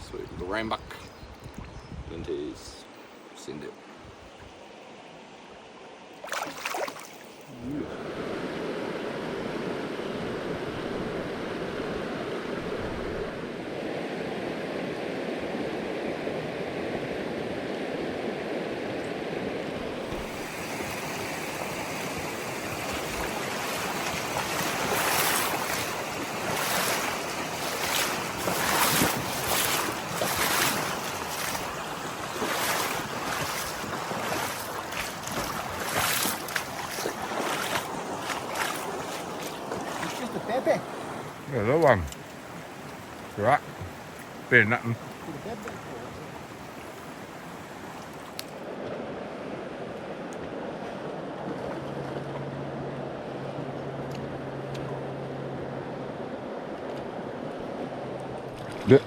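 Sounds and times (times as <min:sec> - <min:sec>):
rushing river water: 0:02.5 - 0:59.0.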